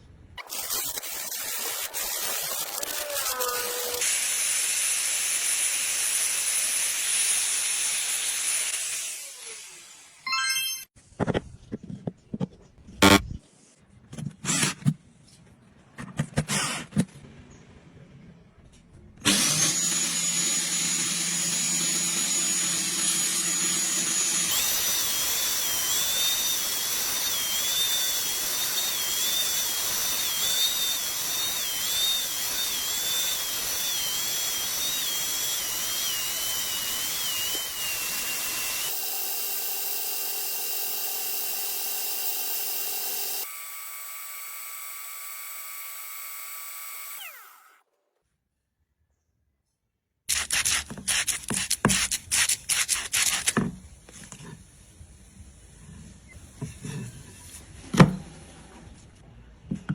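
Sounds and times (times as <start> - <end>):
power tool whining: 0.5 - 10.2, 19.2 - 47.9.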